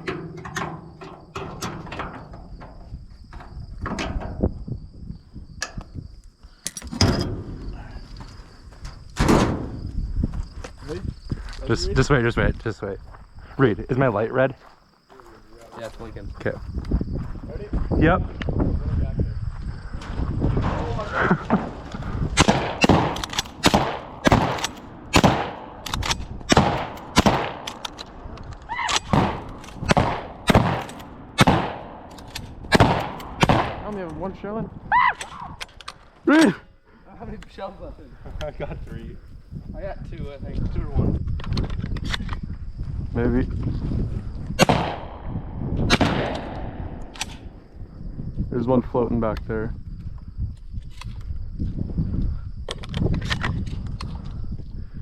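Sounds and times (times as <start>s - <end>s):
high buzz of insects: 0.0s - 36.2s
shotgun blasts: 22.3s - 28.0s, 28.9s - 34.1s, 44.6s - 47.6s.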